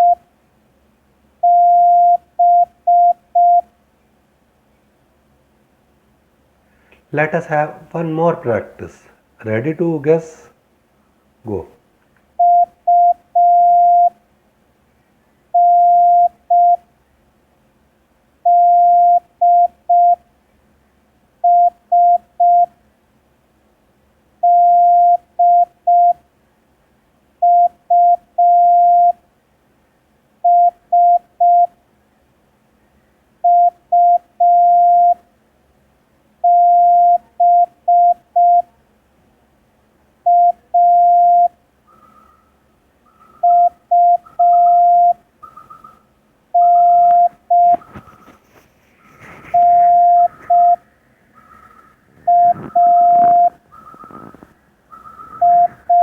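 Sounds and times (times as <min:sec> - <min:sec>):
morse code beeps: 0:00.0 - 0:00.2, 0:01.4 - 0:03.7, 0:12.4 - 0:14.2, 0:15.6 - 0:16.8, 0:18.5 - 0:20.2, 0:21.5 - 0:22.7, 0:24.4 - 0:26.2, 0:27.4 - 0:29.2, 0:30.5 - 0:31.7, 0:33.5 - 0:35.2, 0:36.5 - 0:38.7, 0:40.3 - 0:41.5, 0:43.4 - 0:45.2, 0:46.6 - 0:48.0, 0:49.4 - 0:50.8, 0:52.2 - 0:54.4, 0:55.3 - 0:56.0.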